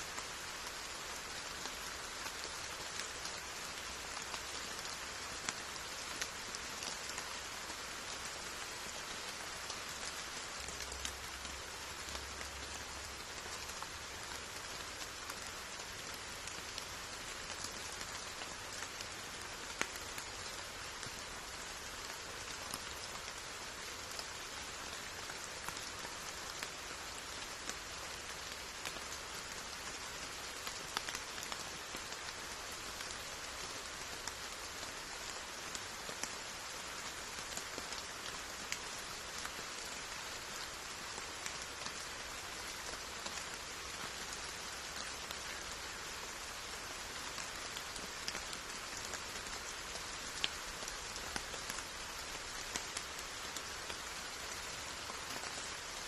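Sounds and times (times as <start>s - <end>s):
steady rain falling: 0.0s - 56.0s
raindrops ticking: 47.3s - 56.0s.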